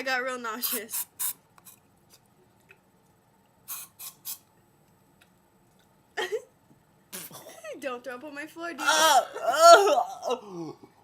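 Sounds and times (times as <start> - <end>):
person grunting: 8.8 - 10.9.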